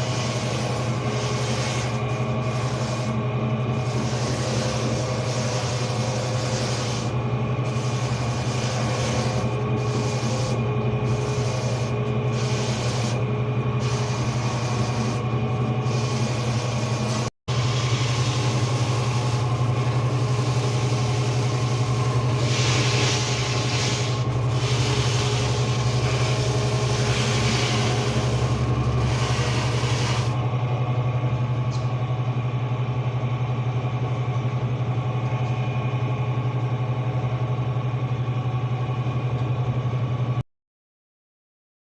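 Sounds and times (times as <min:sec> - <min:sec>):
machine motor hum: 0:00.0 - 0:39.4
hiss: 0:17.5 - 0:30.4.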